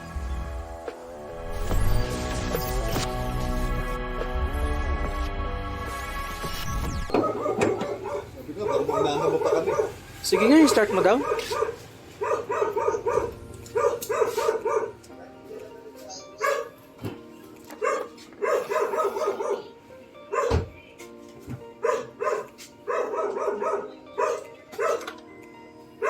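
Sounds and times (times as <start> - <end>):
dog barking: 7.1 - 10.0, 10.7 - 15.1, 16.4 - 16.8, 17.7 - 20.7, 21.8 - 25.2.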